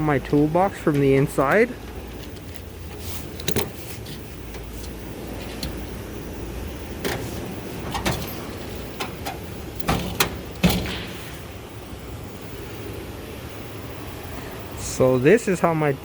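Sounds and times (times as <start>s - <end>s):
metal tool chest drawers clunking: 0.0s - 2.5s, 6.9s - 11.4s.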